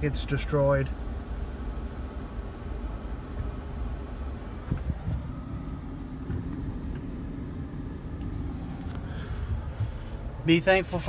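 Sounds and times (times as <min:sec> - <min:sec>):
car engine and road noise: 0:00.0 - 0:11.0.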